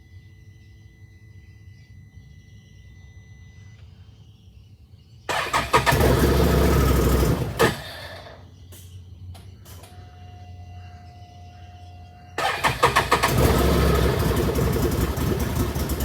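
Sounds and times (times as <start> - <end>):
engine cranking on starter: 5.3 - 8.4, 12.4 - 16.0.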